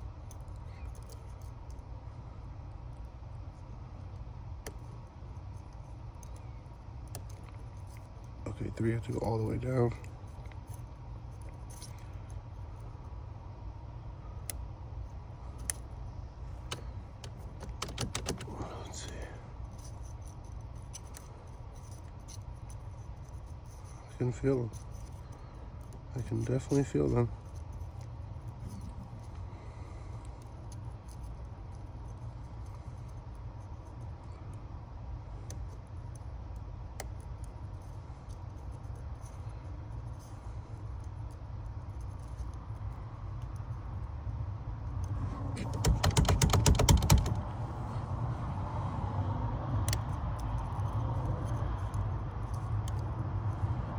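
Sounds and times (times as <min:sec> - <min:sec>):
lock pick clicks: 0:16.6 - 0:18.7, 0:45.6 - 0:47.4
lock pick clicking in a lock: 0:16.6 - 0:22.8, 0:45.0 - 0:47.4, 0:49.8 - 0:53.1.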